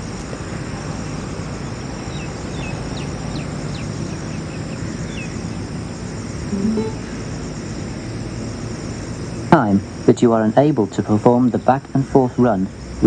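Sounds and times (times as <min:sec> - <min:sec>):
brief low tone: 0:06.5 - 0:07.2
high drone: 0:06.5 - 0:07.5.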